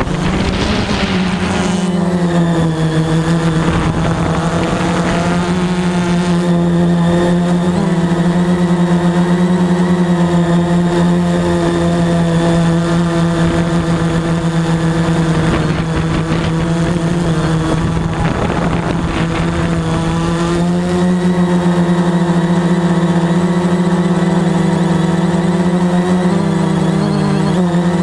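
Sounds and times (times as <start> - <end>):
rushing noise: 0.0 - 6.2
drone motors whining: 0.0 - 28.0.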